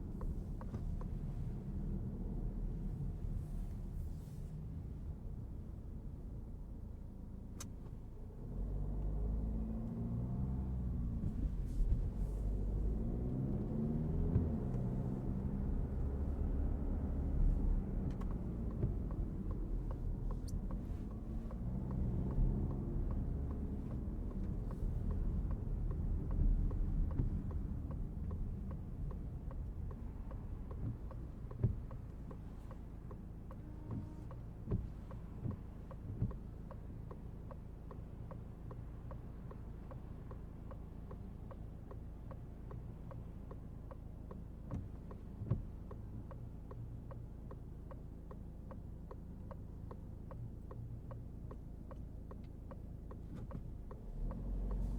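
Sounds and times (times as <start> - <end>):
car engine and road rumble: 0.0 - 54.9
rain patter: 11.2 - 43.4
faint regular ticking: 14.3 - 54.9.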